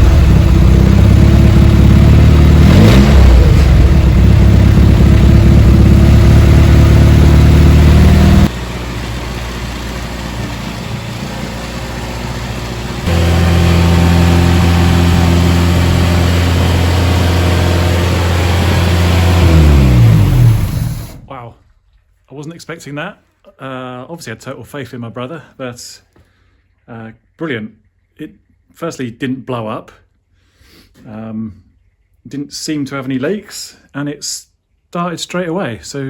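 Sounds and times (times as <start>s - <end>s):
car engine revving: 0.0s - 21.3s.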